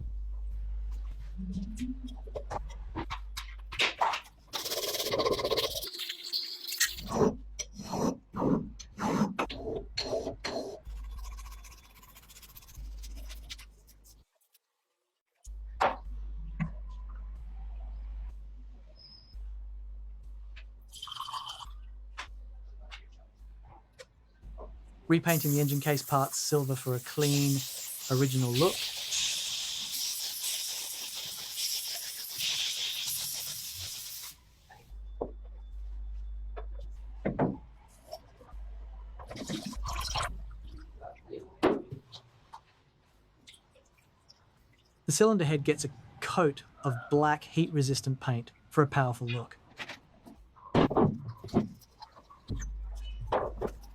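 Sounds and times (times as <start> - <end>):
low hum: 0.0 - 3.0
spray paint hissing: 4.5 - 7.1, 10.9 - 13.9, 25.2 - 34.7
hand sanding on metal: 25.3 - 34.3.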